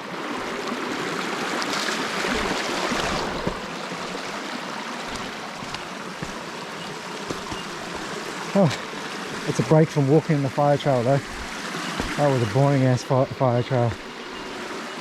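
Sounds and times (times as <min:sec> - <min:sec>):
creek babbling over stones: 0:00.0 - 0:15.0
faint knocks: 0:05.1 - 0:08.2.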